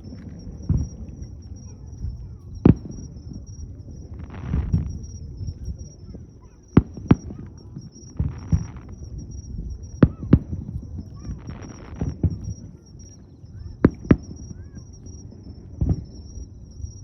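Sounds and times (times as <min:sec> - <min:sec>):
fireworks sharp bangs: 0:00.0 - 0:12.7, 0:13.8 - 0:16.4
fireworks booming thuds: 0:00.0 - 0:12.8, 0:13.8 - 0:16.4
hissing crackle: 0:00.0 - 0:16.6.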